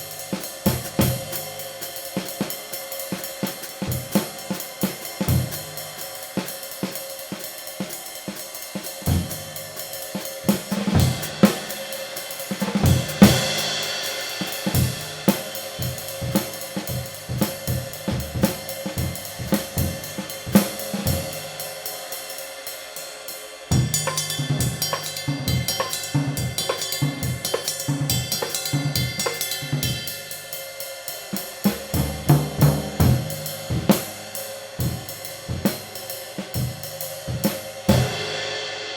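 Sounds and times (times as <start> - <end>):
drum kit groove: 0.0 - 38.9
ride cymbal ringing: 23.9 - 30.2.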